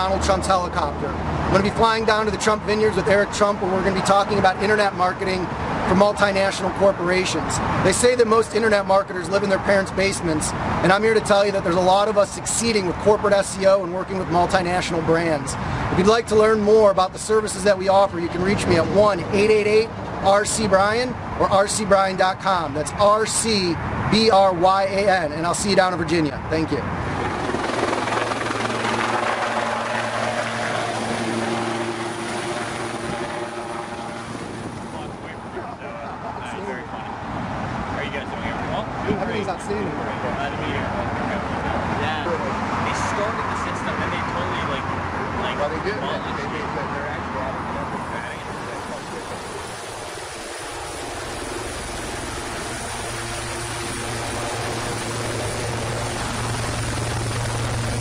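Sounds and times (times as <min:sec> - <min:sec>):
helicopter rotor drone: 0:00.0 - 0:58.0
helicopter engine and rotor: 0:26.9 - 0:36.7, 0:47.6 - 0:58.0.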